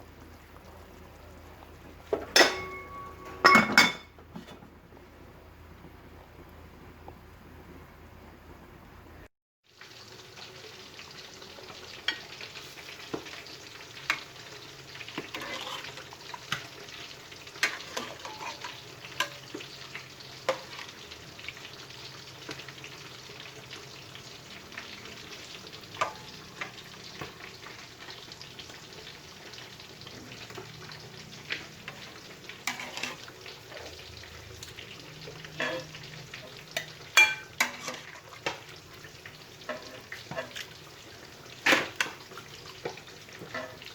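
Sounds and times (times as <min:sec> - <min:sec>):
food sizzling in a pan: 0:00.0 - 0:04.0, 0:09.6 - 0:43.9
utensil scraping and clicking on pan: 0:15.2 - 0:16.7, 0:17.6 - 0:19.4, 0:32.6 - 0:33.2, 0:36.8 - 0:38.6, 0:39.7 - 0:40.8.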